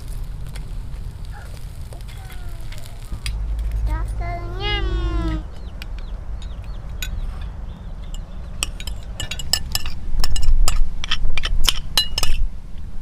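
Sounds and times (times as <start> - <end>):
dishes and utensils clinking: 6.4 - 12.5.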